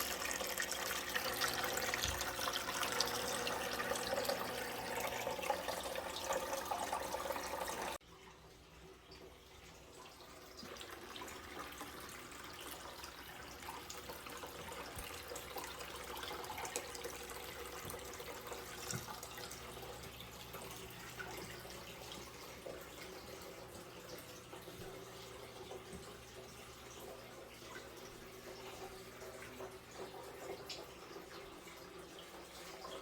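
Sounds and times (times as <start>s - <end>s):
fountain water trickling over rocks: 0.0s - 33.0s
small water drips: 0.0s - 33.0s.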